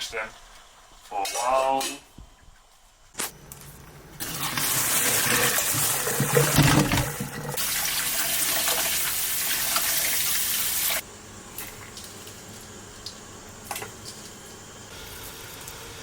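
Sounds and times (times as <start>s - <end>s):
tap water gushing into a sink: 3.8s - 12.1s
bumps in a sink: 5.6s - 7.6s.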